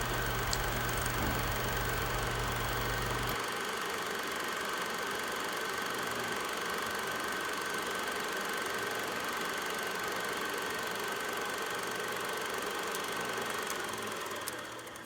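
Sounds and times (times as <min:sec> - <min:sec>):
high-pitched whine: 0:00.0 - 0:03.4
machine hum: 0:00.0 - 0:03.4.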